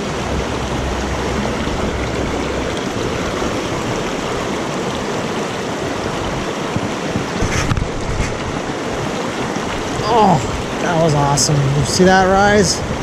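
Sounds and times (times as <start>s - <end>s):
creek running over rocks: 0.0s - 13.0s.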